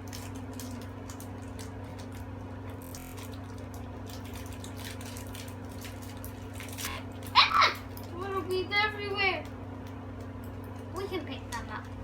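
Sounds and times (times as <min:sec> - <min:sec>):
plastic packet crinkling: 0:00.0 - 0:02.4, 0:03.1 - 0:08.3
steady low hum: 0:00.0 - 0:12.0.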